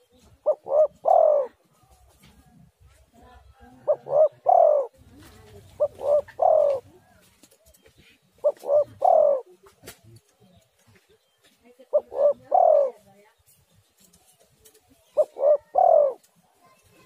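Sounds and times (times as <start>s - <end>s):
dove cooing: 0.0s - 2.0s, 3.4s - 7.3s, 8.0s - 9.8s, 11.9s - 13.1s, 15.0s - 16.3s.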